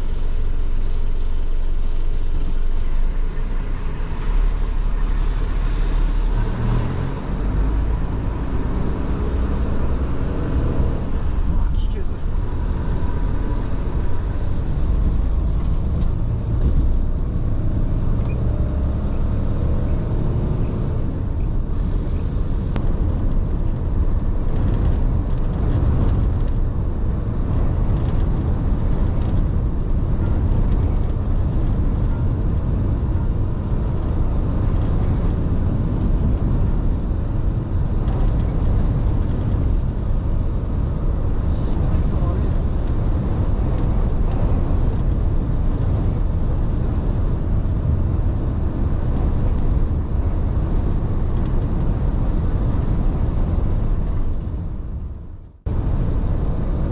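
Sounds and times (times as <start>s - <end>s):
road noise: 0.0s - 56.9s
truck engine rumble: 0.0s - 56.9s
wind noise: 0.0s - 56.9s.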